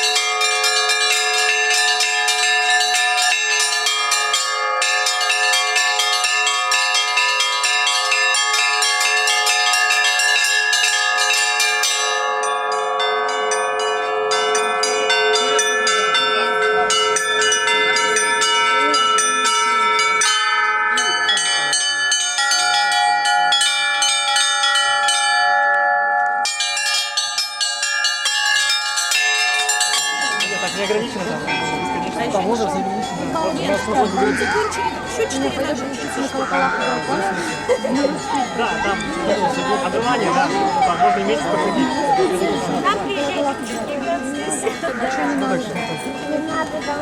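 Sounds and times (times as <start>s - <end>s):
deep ringing of large bells: 0.0s - 47.0s
small high bells struck quickly: 0.0s - 47.0s.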